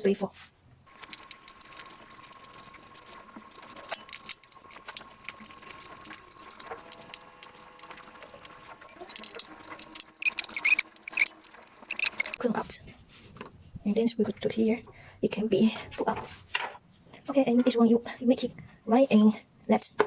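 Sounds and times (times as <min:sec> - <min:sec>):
metallic clicks and rattles of screws: 0:00.9 - 0:12.4.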